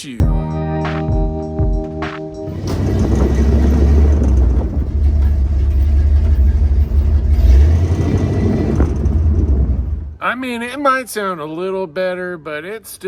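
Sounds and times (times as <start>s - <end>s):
pickup truck engine and road rumble: 2.0s - 10.2s.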